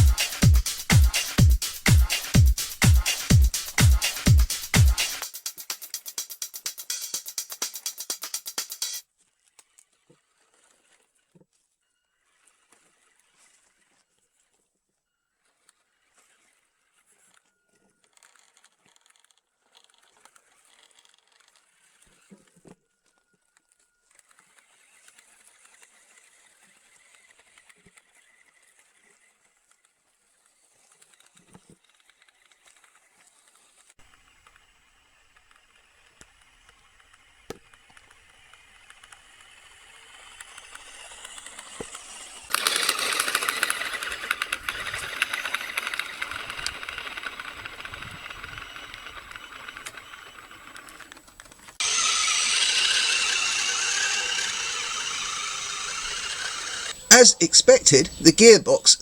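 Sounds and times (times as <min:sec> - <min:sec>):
toy truck motors whining: 0:00.0 - 0:06.0, 0:34.1 - 0:59.0
fine rattle and clicking: 0:40.4 - 0:57.0.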